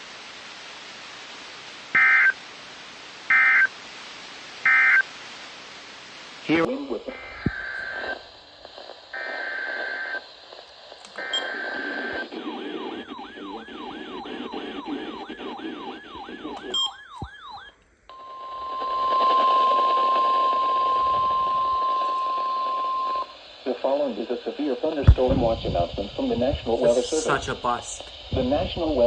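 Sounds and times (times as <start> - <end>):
faint radio hiss: 0.0 - 29.0
data burst tones: 11.2 - 17.6.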